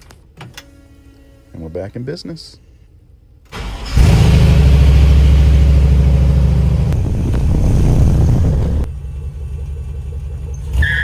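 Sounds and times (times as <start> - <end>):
car engine idling: 4.5 - 10.5.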